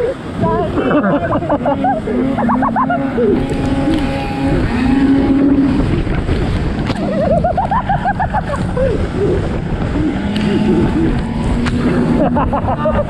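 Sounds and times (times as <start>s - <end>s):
rising and falling higher tones: 0.0s - 6.1s
sled pulled over snow: 0.0s - 13.0s
snowmobile engine running: 0.0s - 13.0s
wind rush on microphone: 0.0s - 13.0s.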